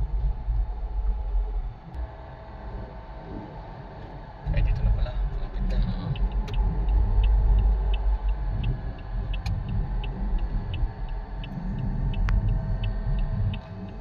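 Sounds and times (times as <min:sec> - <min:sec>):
car engine rumbling: 0:00.0 - 0:14.0
light regular ticking: 0:04.6 - 0:14.0.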